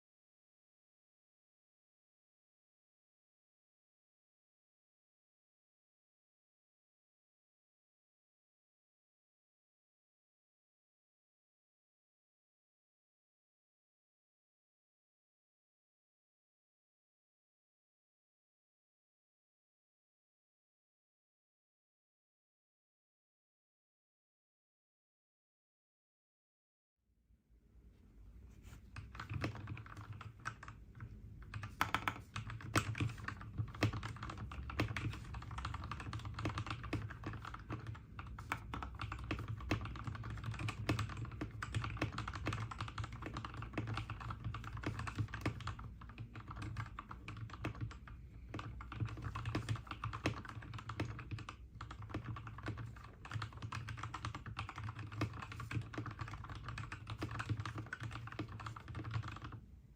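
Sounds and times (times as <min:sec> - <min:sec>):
mechanical keyboard typing: 0:29.0 - 0:59.6.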